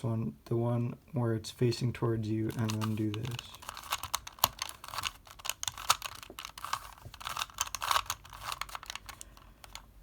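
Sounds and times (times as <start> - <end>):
puzzle cube clicking and scraping: 2.5 - 9.9.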